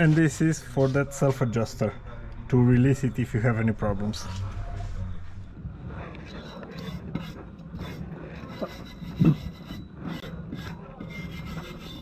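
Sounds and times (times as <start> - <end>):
scrubbing rusty brake parts: 6.2 - 12.0.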